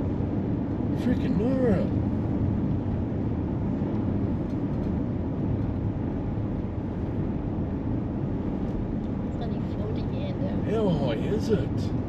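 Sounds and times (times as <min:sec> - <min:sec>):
car road and engine noise: 0:00.0 - 0:12.0.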